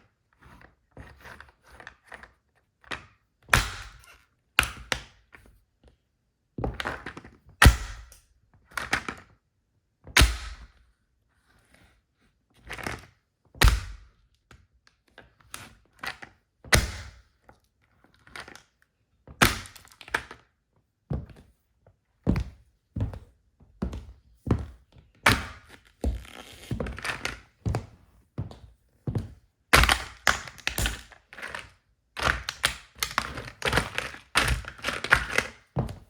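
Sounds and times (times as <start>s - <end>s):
shoes stamping on plastic toy: 22.3s - 36.0s
plastic cracking: 29.8s - 35.6s.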